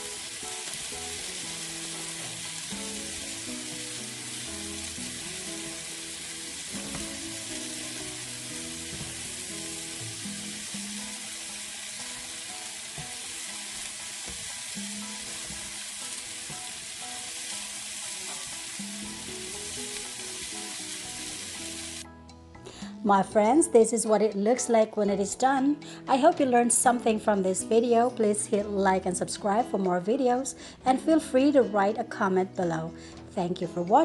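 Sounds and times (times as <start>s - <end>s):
meat and vegetables sizzling in pan: 0.0s - 22.0s
soft background music: 0.0s - 34.0s.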